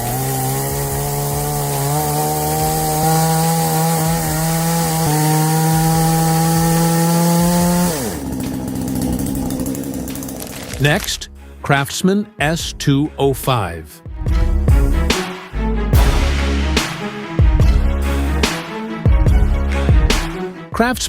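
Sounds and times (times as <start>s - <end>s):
chainsaw cutting wood: 0.0s - 11.2s.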